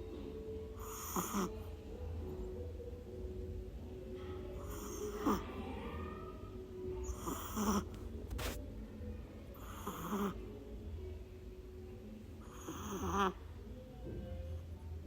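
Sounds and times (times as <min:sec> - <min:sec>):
dog snoring: 0:00.8 - 0:01.7, 0:04.6 - 0:05.4, 0:07.0 - 0:08.6, 0:09.6 - 0:10.4, 0:12.4 - 0:13.4.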